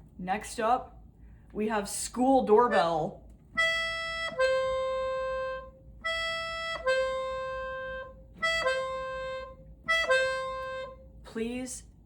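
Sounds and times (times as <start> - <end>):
accordion two-note chime: 3.6 - 11.0.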